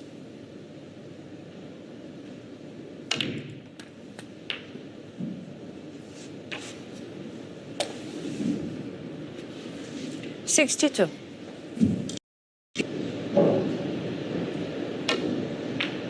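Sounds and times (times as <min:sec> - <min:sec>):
snooker balls clicking: 0:03.1 - 0:04.8, 0:15.1 - 0:16.0.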